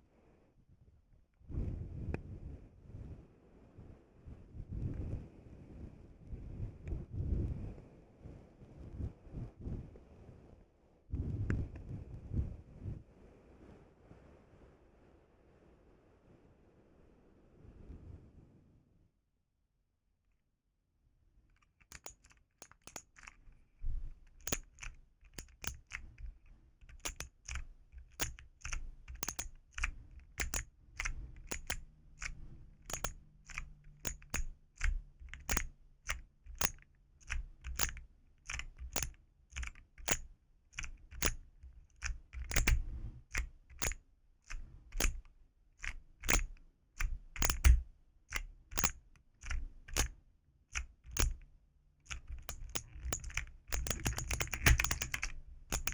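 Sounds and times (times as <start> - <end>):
clacky key clicks: 21.5 - 55.9.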